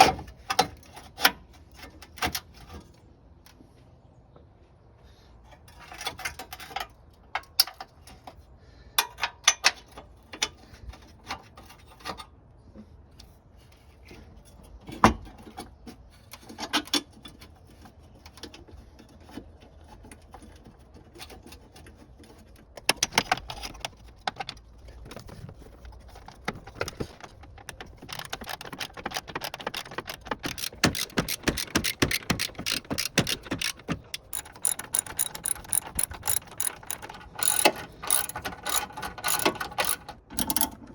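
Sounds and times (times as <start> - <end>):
hand tools clicking and knocking: 22.8 - 40.9
socket ratchet clicking: 26.2 - 40.7.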